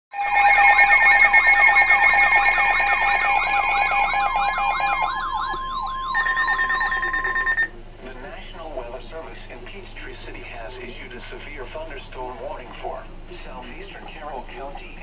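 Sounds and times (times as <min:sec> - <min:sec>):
electronic alert tones: 0:00.1 - 0:07.7
electronic siren sweeping: 0:00.1 - 0:07.7.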